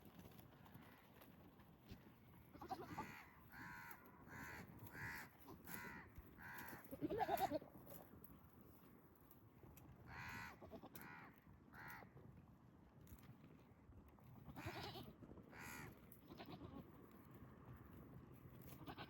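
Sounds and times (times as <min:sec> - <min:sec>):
crow cawing: 0:02.7 - 0:06.8, 0:10.1 - 0:12.1, 0:15.5 - 0:15.9.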